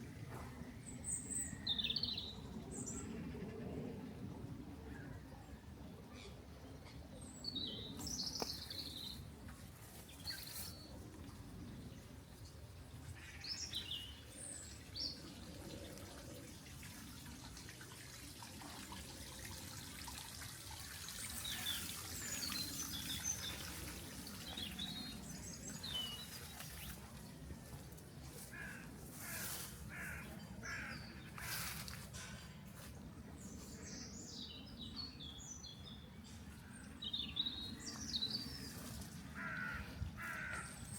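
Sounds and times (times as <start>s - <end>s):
songbirds chirping: 0.0s - 17.4s, 19.5s - 40.9s
small waterfall splashing: 14.9s - 27.0s.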